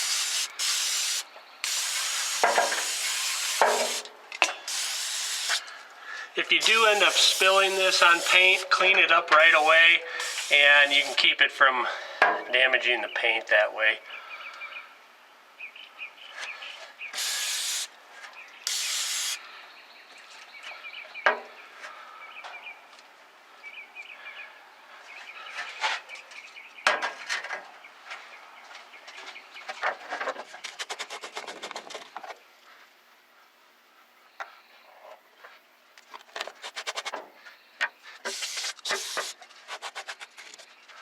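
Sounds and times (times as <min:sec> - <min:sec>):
aerosol spray hissing: 0:00.0 - 0:04.0, 0:04.7 - 0:05.6, 0:06.6 - 0:08.8, 0:09.6 - 0:11.2, 0:17.2 - 0:17.9, 0:18.7 - 0:19.4, 0:38.3 - 0:39.3.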